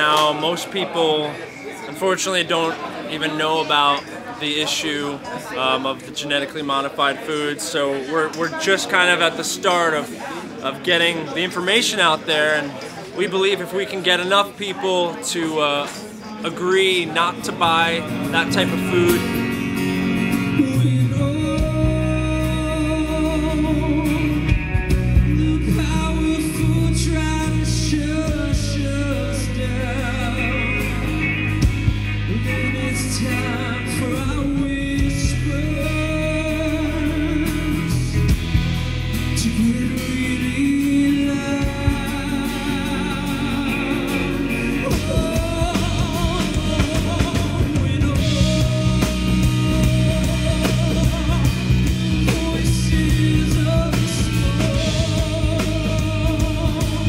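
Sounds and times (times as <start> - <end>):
rock song with singing: 17.3 - 57.0.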